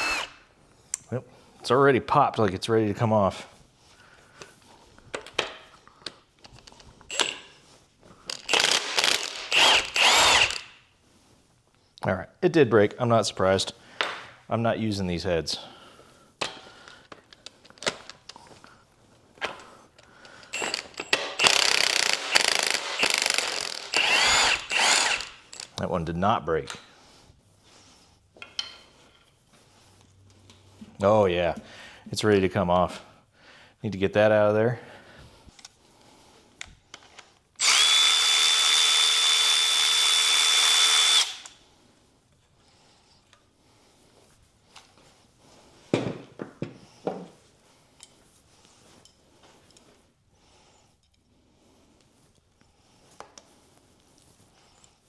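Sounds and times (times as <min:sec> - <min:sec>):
power tool rattling: 0:00.0 - 0:00.4, 0:07.1 - 0:07.5, 0:08.3 - 0:10.8, 0:20.5 - 0:25.7, 0:37.6 - 0:41.6
impact wrench whining: 0:00.0 - 0:00.5, 0:07.1 - 0:07.6, 0:08.3 - 0:10.8, 0:20.3 - 0:25.8, 0:37.6 - 0:41.6.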